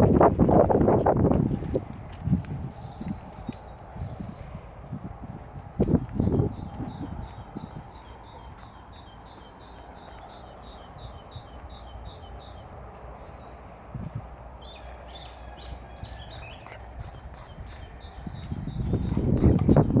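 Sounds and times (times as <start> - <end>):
steady low rumble: 0.0 - 20.0
bird chirping: 2.3 - 4.4, 6.2 - 20.0.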